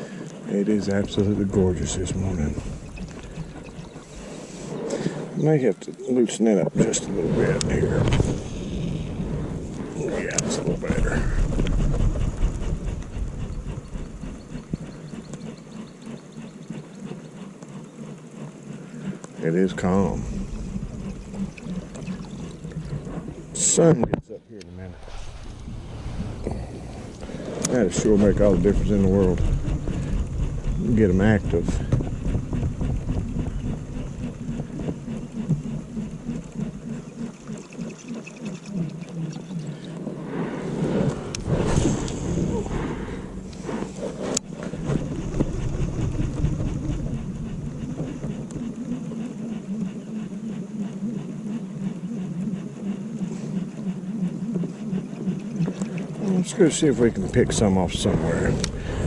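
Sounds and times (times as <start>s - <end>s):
fishing reel clicking and whirring: 0.0s - 5.7s, 9.9s - 23.9s, 27.6s - 40.1s
loud rustle: 24.8s - 30.7s.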